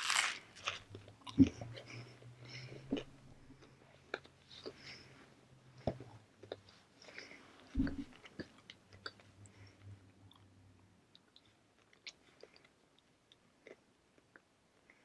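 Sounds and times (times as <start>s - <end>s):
chewing crunches: 0.0s - 4.9s.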